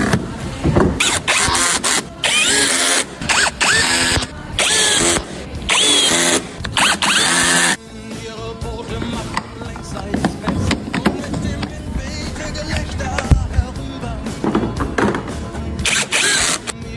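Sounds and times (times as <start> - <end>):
power drill motor whine: 1.0 - 7.8, 15.8 - 16.7.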